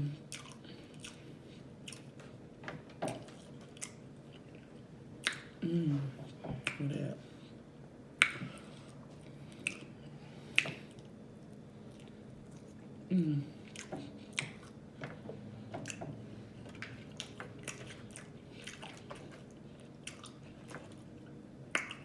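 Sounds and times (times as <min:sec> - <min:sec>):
close chewing with mouth clicks: 0:00.2 - 0:02.3, 0:03.1 - 0:05.6, 0:08.2 - 0:13.0, 0:13.6 - 0:16.1, 0:16.7 - 0:22.0.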